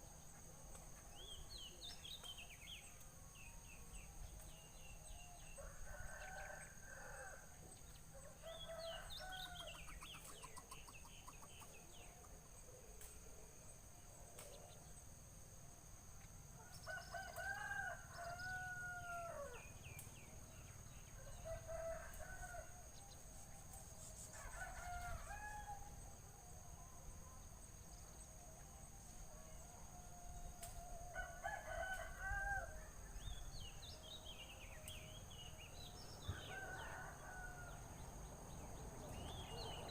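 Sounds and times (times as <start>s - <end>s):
roosters crowing: 16.9s - 19.6s, 36.3s - 37.9s.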